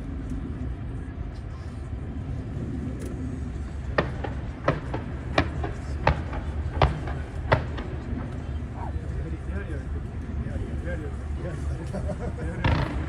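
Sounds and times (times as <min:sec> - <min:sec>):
low outdoor rumble: 0:00.0 - 0:13.0
firework bangs: 0:03.8 - 0:09.6, 0:12.2 - 0:13.0.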